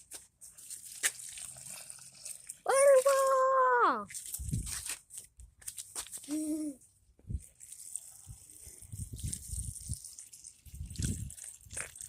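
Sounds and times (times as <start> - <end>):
running water trickling: 0.4 - 4.6, 7.3 - 12.0.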